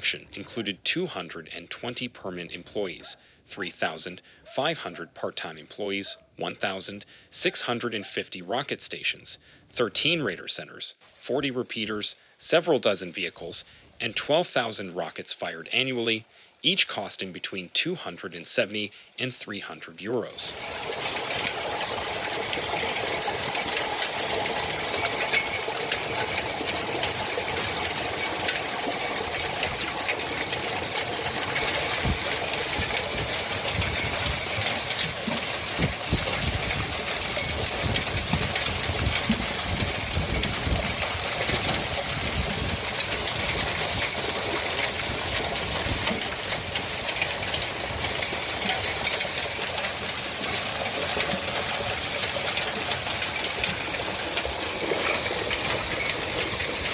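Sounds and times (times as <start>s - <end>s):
hailstones rattling: 20.3s - 56.9s
heavy hail thuds: 20.5s - 56.9s.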